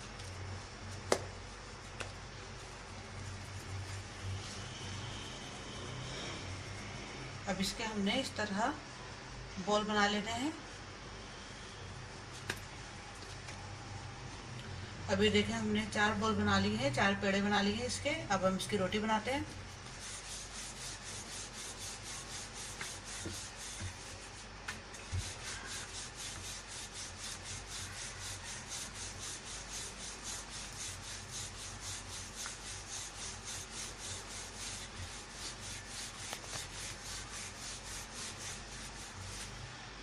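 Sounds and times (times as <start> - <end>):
rolling pin rubbing on board: 19.0 - 39.6.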